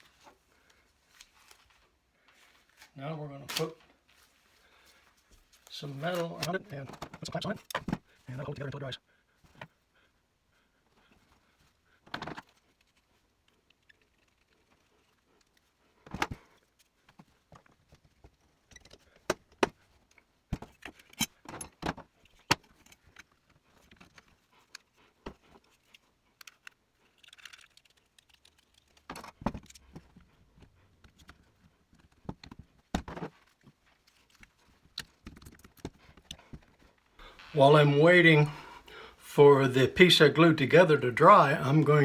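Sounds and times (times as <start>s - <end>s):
metal clamps clicking and clinking: 20.9s - 21.8s.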